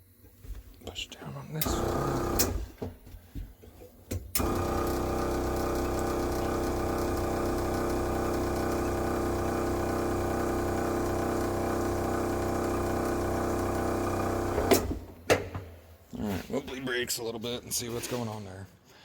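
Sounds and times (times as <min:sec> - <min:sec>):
electric air compressor humming: 0:01.6 - 0:02.8, 0:04.4 - 0:15.2.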